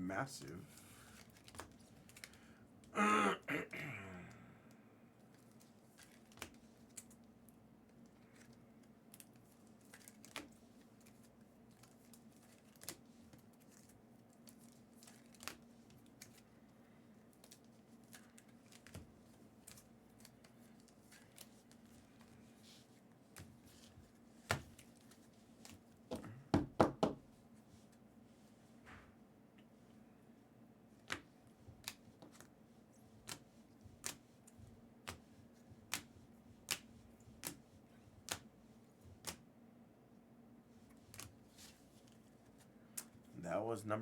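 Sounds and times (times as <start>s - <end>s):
faint steady hum: 0.0s - 44.0s
handling cards and foil packs: 0.7s - 2.5s, 7.9s - 26.0s.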